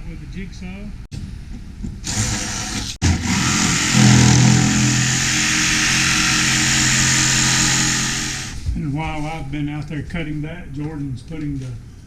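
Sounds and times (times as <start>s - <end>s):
jigsaw running: 2.0s - 8.6s.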